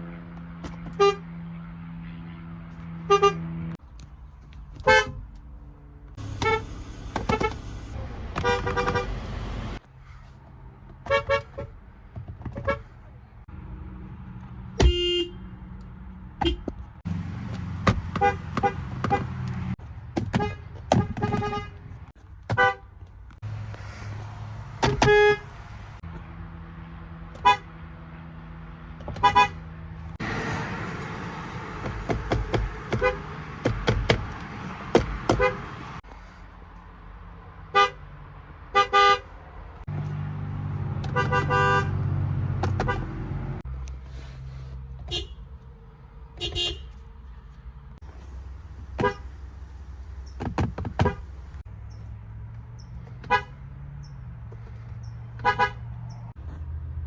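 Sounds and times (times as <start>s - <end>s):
car engines running: 0.0s - 57.0s
car horns honking: 0.8s - 1.4s, 2.0s - 3.8s, 4.8s - 5.2s, 6.2s - 9.8s, 11.0s - 11.8s, 12.5s - 13.0s, 14.7s - 15.7s, 16.4s - 16.8s, 17.8s - 23.0s, 24.8s - 25.7s, 27.3s - 27.8s, 29.0s - 29.7s, 32.3s - 34.1s, 34.9s - 36.0s, 37.7s - 38.1s, 38.7s - 39.3s, 40.8s - 43.4s, 45.0s - 45.5s, 46.4s - 47.0s, 48.9s - 49.4s, 50.8s - 51.4s, 53.2s - 54.2s, 55.4s - 56.2s.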